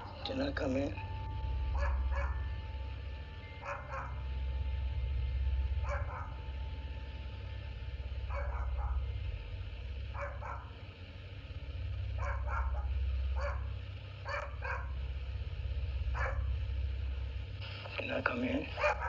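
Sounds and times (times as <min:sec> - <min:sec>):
steady low hum: 0:00.0 - 0:19.0
steady low rumble: 0:00.0 - 0:19.0
dog barking: 0:01.8 - 0:02.5, 0:03.6 - 0:04.3, 0:05.8 - 0:06.5, 0:08.3 - 0:09.1, 0:10.1 - 0:10.8, 0:12.2 - 0:13.7, 0:14.3 - 0:15.0, 0:16.2 - 0:16.6, 0:18.8 - 0:19.0.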